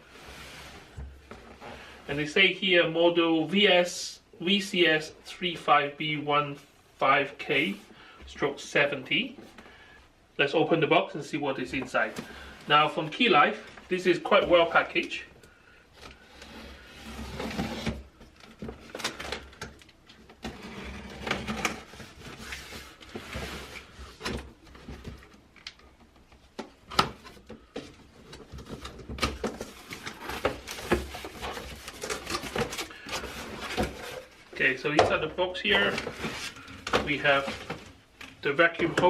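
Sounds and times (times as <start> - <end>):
cardboard box rustling and scraping: 28.6 - 34.5, 35.7 - 38.0.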